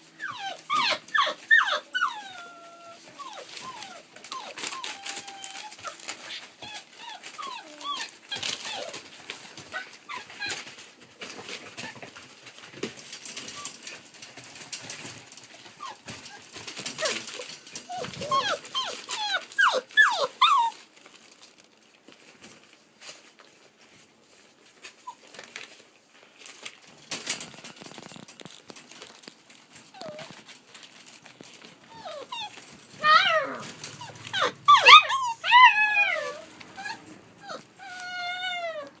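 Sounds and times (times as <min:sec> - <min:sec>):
puppies whining and yelping: 0:00.0 - 0:10.9, 0:13.2 - 0:20.9, 0:24.8 - 0:25.6, 0:29.8 - 0:39.0
rustling: 0:00.0 - 0:39.0.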